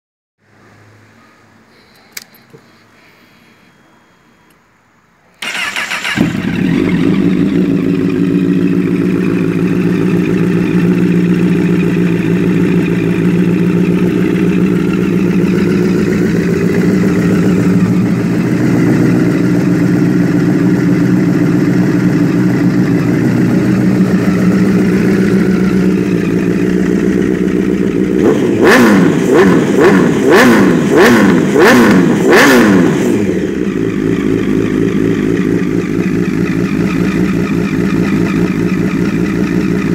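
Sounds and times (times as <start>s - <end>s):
click: 2.0s - 2.6s
engine revving: 5.4s - 39.9s
motorcycle engine idling: 5.4s - 39.9s.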